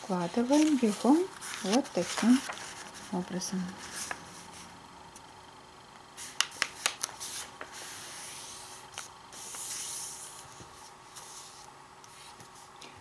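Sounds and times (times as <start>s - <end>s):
paper being folded: 0.1s - 3.2s, 3.8s - 4.6s, 6.2s - 12.7s.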